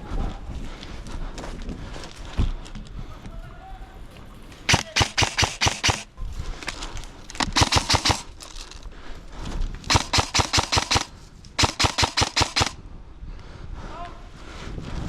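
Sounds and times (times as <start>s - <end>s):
airsoft gun firing rapid bursts: 4.7s - 6.2s, 7.4s - 8.5s, 9.9s - 12.8s.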